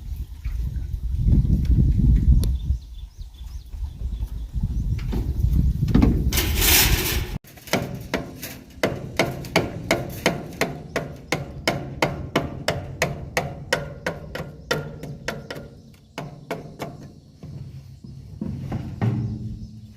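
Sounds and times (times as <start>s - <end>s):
tool knocking on wood: 7.7s - 17.7s, 18.4s - 19.6s.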